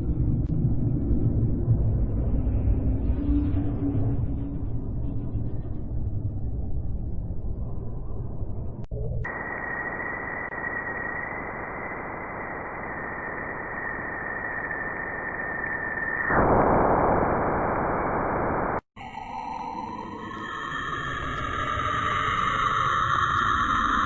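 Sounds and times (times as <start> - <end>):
steady static hiss: 9.3 - 15.6
steady whistling tone: 9.3 - 16.4.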